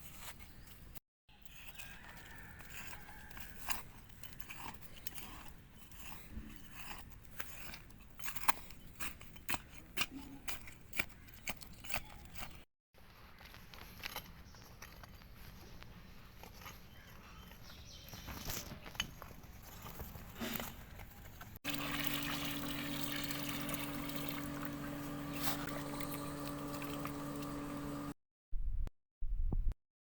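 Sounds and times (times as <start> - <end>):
water pouring: 21.7 - 28.1
low hum: 21.7 - 29.8.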